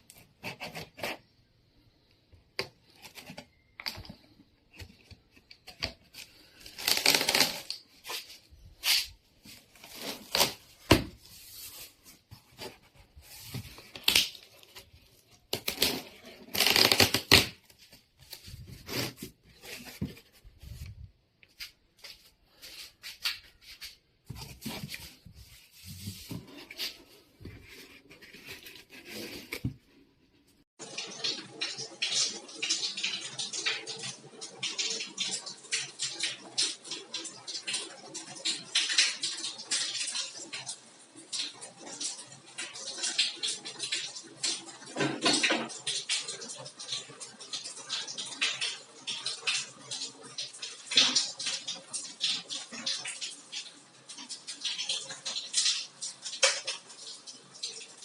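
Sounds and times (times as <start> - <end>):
packaging rustling and tearing: 5.6 - 20.9.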